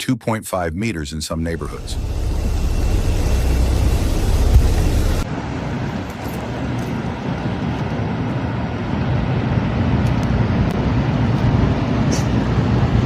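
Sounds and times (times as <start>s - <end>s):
motor vehicle rumble: 1.6s - 13.0s.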